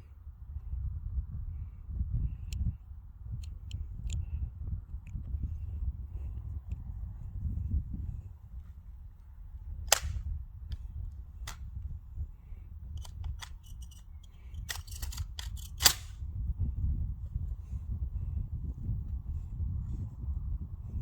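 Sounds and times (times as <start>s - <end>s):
rifle gunshots: 14.7s - 16.2s.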